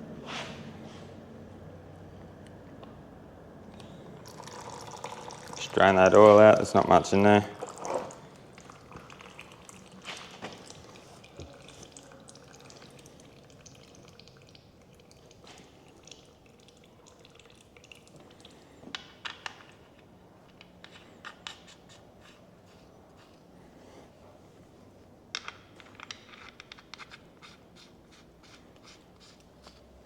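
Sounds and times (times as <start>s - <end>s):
oil dripping into a tray: 3.7s - 19.6s.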